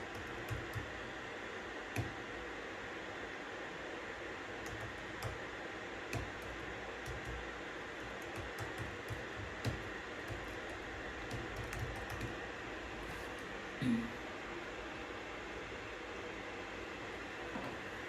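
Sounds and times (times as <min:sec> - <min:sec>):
keyboard typing: 0:00.0 - 0:01.1, 0:02.0 - 0:02.4, 0:04.6 - 0:05.5, 0:06.1 - 0:12.5.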